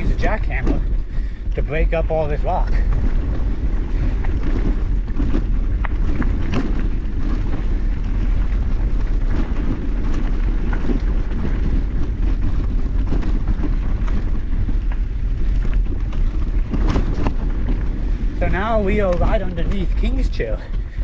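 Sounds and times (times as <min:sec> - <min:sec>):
wind rumble on microphone: 0:00.0 - 0:21.0
bike clacking on rocks: 0:08.5 - 0:21.0.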